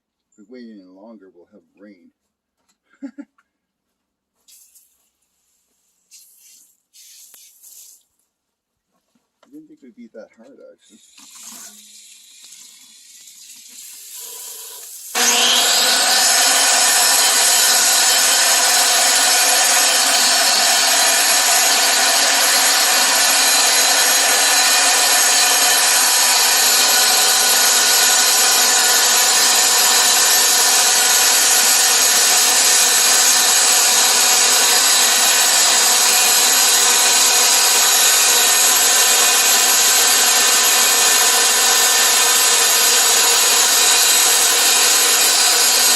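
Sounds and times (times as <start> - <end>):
power cutter grinding rock: 15.1 - 45.9.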